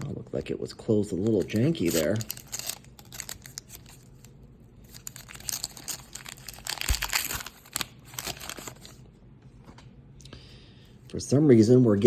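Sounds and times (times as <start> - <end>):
wax paper wrapper crinkling: 1.0 - 9.0.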